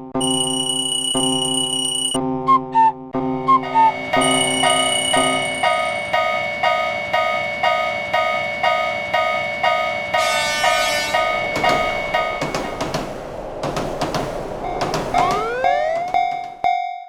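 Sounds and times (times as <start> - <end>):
crossing warning bell ringing: 0.2 - 2.2, 3.6 - 17.0
steady high tone: 3.6 - 7.7, 10.2 - 13.6
sharp knocks: 10.2 - 16.7.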